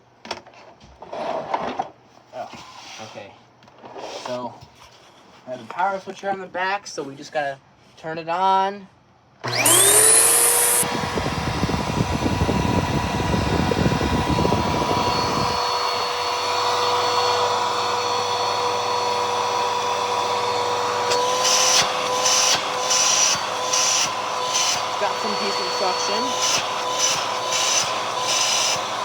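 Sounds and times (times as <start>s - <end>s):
vacuum cleaner whining: 9.4s - 29.0s.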